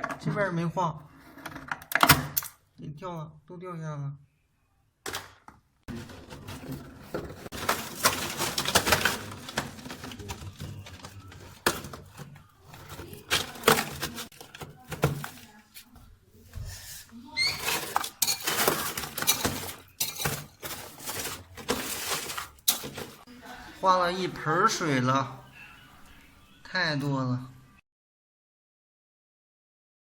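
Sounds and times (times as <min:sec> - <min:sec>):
ice chunks knocking and scraping: 0:05.9 - 0:15.7, 0:17.4 - 0:23.3
high squeak: 0:17.3 - 0:18.0.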